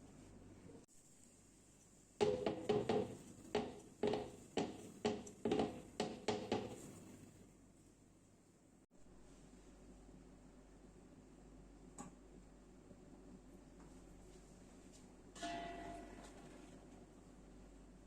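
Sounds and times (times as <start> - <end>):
kitchenware knocking: 2.2 - 6.9.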